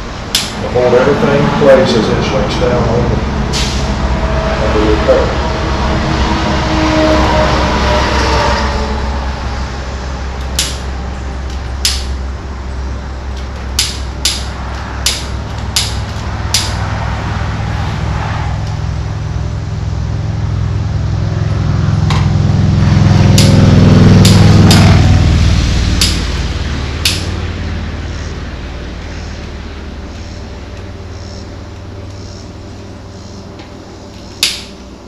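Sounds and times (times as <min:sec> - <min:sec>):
heat gun fan hum: 0:00.0 - 0:01.3, 0:10.2 - 0:18.0, 0:21.4 - 0:27.7
sharp clicks and taps: 0:00.3 - 0:00.6, 0:10.4 - 0:10.9, 0:11.5 - 0:12.2, 0:13.3 - 0:16.8, 0:24.2 - 0:25.0, 0:26.0 - 0:26.4, 0:27.0 - 0:27.3, 0:33.6 - 0:34.7.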